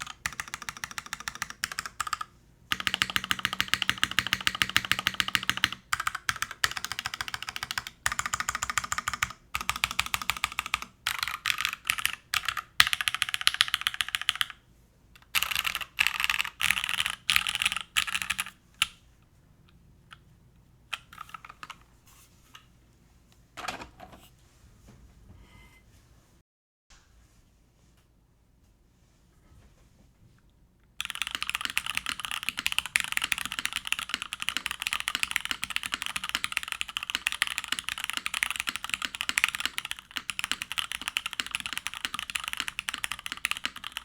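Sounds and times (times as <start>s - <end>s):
typing on mechanical keyboard: 0.0s - 14.6s, 15.2s - 19.0s, 31.0s - 44.0s.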